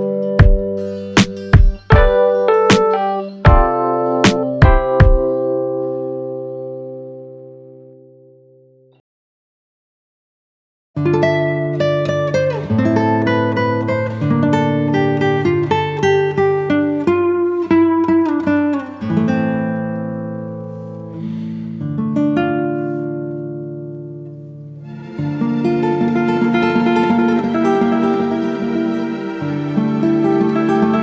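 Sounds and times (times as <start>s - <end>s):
plucked string music: 0.0s - 3.7s, 11.0s - 31.0s.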